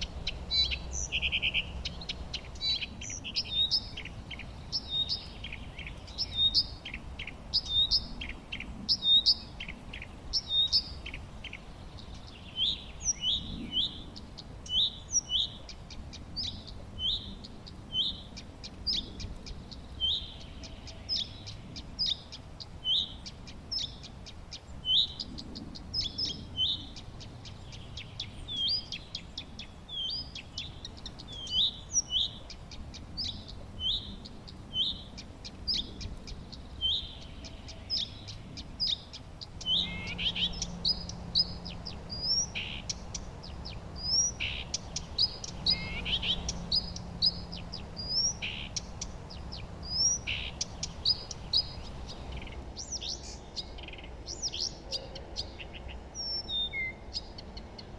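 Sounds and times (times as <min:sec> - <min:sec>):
songbirds chirping: 0:00.0 - 0:57.9.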